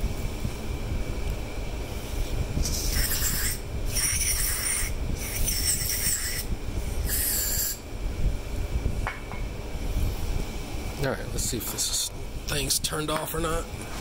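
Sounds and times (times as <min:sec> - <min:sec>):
low fan rumble: 0:00.0 - 0:14.0
rasping strokes: 0:02.6 - 0:07.8.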